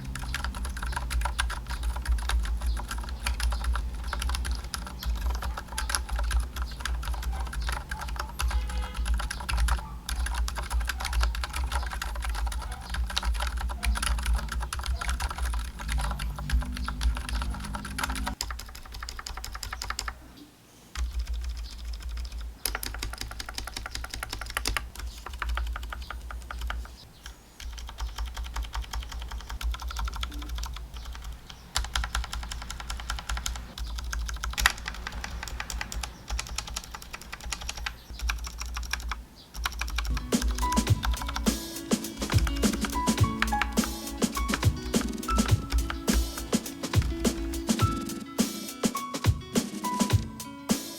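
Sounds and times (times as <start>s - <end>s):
fast mechanical keyboard typing: 0.0s - 20.2s, 21.0s - 48.0s.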